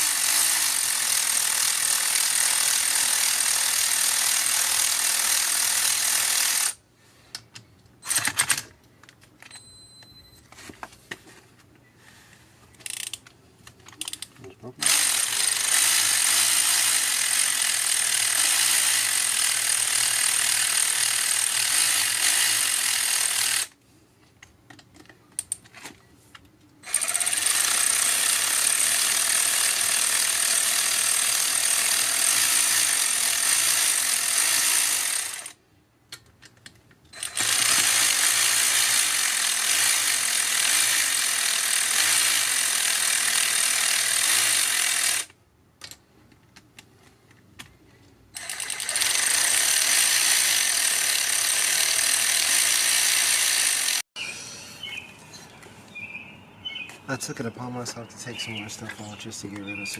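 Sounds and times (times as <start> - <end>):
electric ratchet running: 0.0 - 6.8, 14.8 - 23.7, 26.8 - 35.6, 37.2 - 45.4, 48.4 - 54.0.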